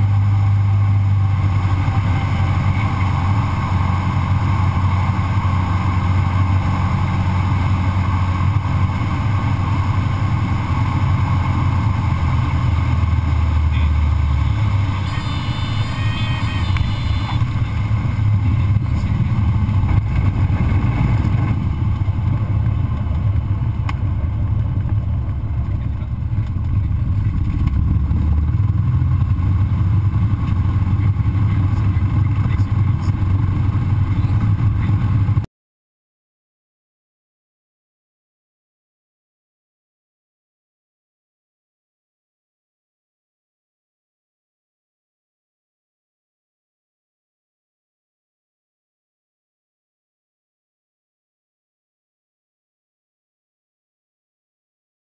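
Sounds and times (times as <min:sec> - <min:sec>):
airplane engine and propeller droning: 0:00.0 - 0:35.5
high steady tone: 0:14.3 - 0:17.8.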